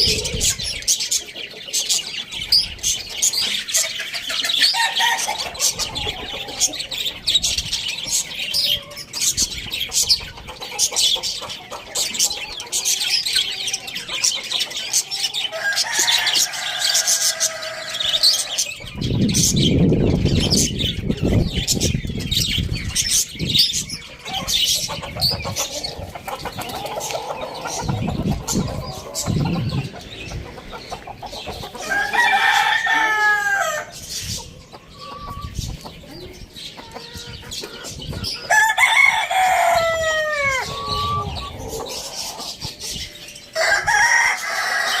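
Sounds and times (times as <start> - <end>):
chickens clucking: 0.0 - 45.0
rooster crowing: 15.5 - 18.6, 31.8 - 33.9, 38.5 - 41.8, 43.6 - 45.0.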